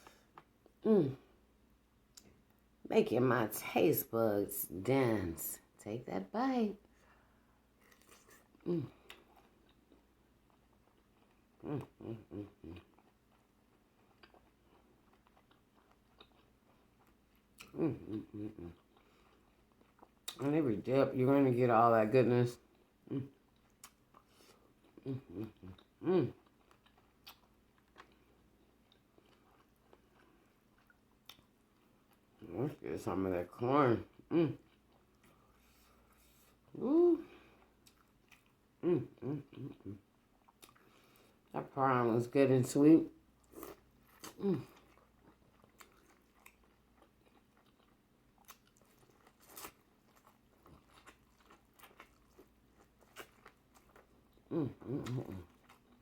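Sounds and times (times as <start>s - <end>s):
person humming: 0.8s - 1.2s, 8.6s - 9.0s, 36.8s - 37.4s, 38.8s - 40.0s
person chewing wetly: 7.8s - 20.4s, 22.6s - 32.5s, 34.0s - 36.5s, 37.4s - 41.5s, 43.3s - 56.0s.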